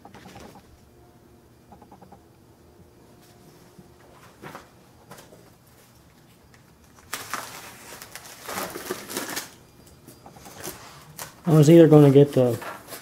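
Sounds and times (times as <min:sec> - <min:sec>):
packaging rustling and crinkling: 0:04.2 - 0:09.6, 0:10.4 - 0:13.0.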